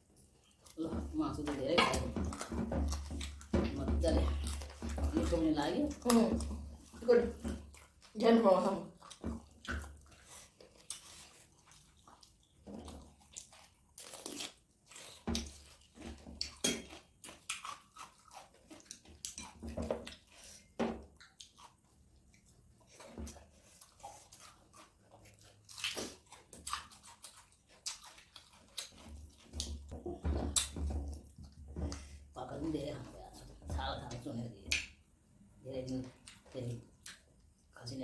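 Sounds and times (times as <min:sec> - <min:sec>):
person chewing food: 0:00.0 - 0:00.8, 0:02.0 - 0:03.6, 0:06.0 - 0:08.2, 0:08.9 - 0:32.3, 0:36.2 - 0:37.7.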